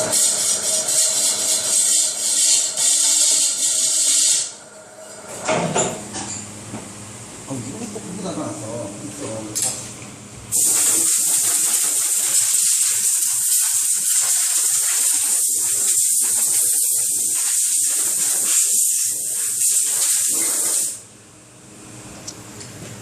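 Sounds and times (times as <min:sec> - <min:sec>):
compressed air hissing from nozzle: 0:00.0 - 0:04.5, 0:10.5 - 0:21.0.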